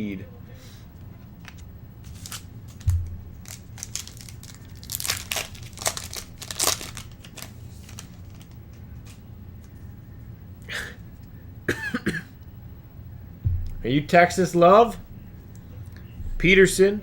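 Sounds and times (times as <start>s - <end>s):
cards being handled: 1.2s - 9.8s
wrapper crinkling and tearing: 1.5s - 9.2s
dull thump: 2.8s - 3.4s, 13.4s - 13.9s.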